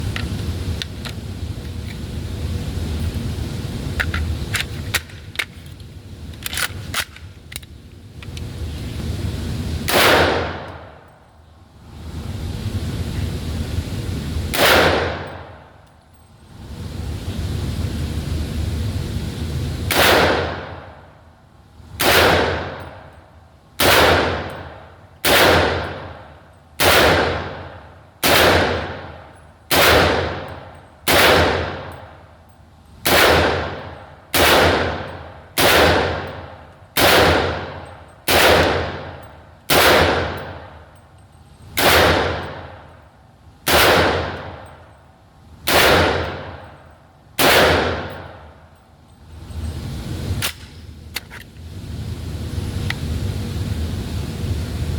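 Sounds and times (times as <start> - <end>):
gunshots: 9.9 - 10.8, 14.5 - 15.4, 19.9 - 20.9, 22.0 - 22.8, 23.8 - 24.5, 25.2 - 26.1, 26.8 - 29.1, 29.7 - 30.5, 31.1 - 31.9, 33.1 - 40.7, 41.8 - 42.8, 43.7 - 44.6, 45.7 - 46.6, 47.4 - 48.4.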